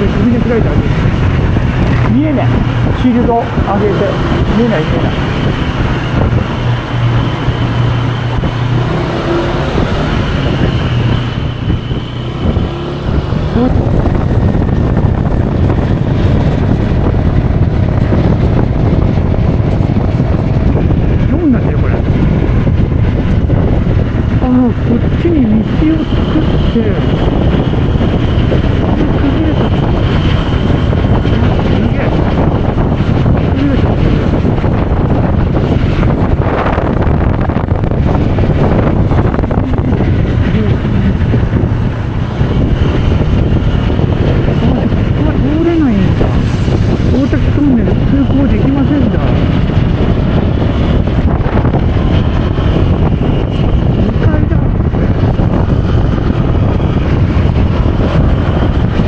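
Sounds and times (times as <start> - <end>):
scooter engine running: 0.0 - 46.4
wind buffeting microphone: 0.0 - 59.0.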